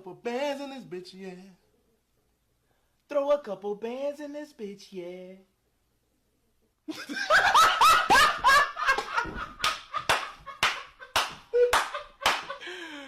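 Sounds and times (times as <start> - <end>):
people laughing hard: 6.9 - 13.0
sharp slaps: 9.2 - 12.6.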